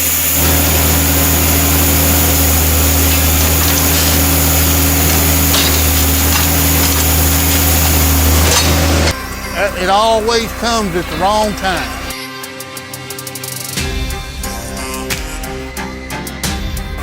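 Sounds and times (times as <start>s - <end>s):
engine running steadily: 0.0s - 12.2s.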